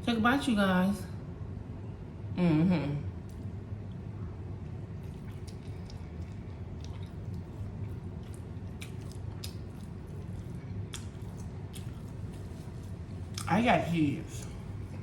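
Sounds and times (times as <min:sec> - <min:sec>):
low steady hum: 0:00.0 - 0:15.0
person chewing food: 0:03.2 - 0:13.6.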